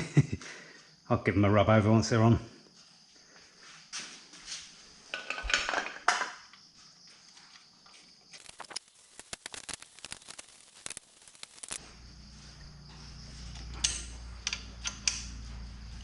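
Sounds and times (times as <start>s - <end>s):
small sharp clicks: 8.4s - 11.8s, 13.5s - 15.4s
metal parts clinking: 13.6s - 15.4s.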